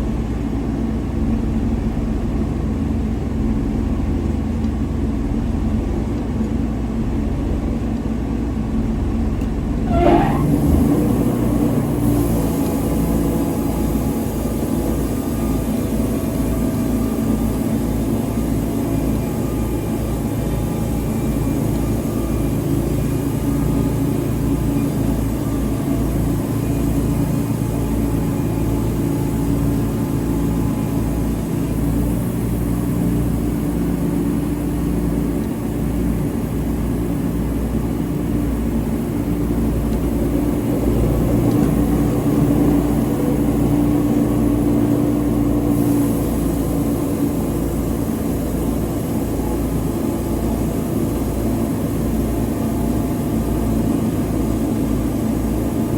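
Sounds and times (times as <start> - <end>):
sawmill engine running: 8.4 - 55.9.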